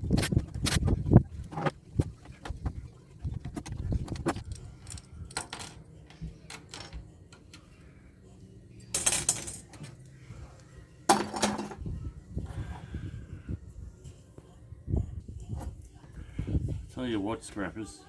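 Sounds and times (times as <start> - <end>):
small metal parts clinking: 3.6 - 7.6, 8.8 - 10.0, 11.1 - 11.8.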